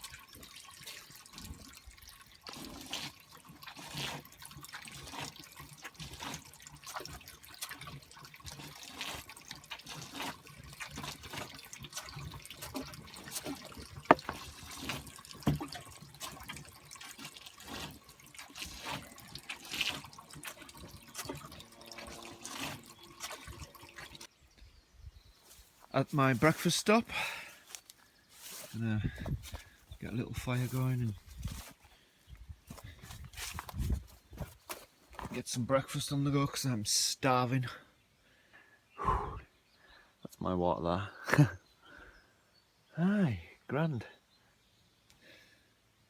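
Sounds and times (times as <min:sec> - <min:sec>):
water trickling and dripping: 0:00.0 - 0:24.3.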